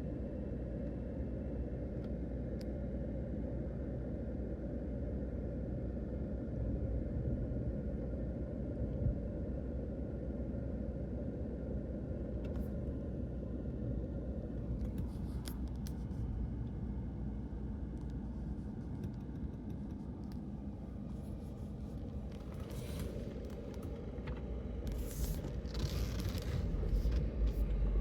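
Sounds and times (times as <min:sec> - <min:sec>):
car road and engine noise: 0:12.1 - 0:28.0.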